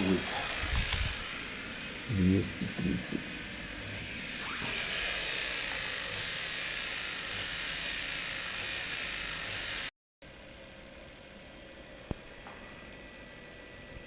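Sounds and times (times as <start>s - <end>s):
electric motor whining: 0.0s - 9.9s.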